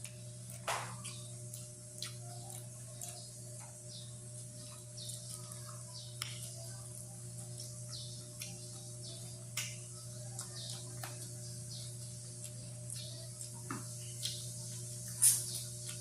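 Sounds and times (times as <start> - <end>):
wet chewing mouth clicks: 1.0 - 3.7.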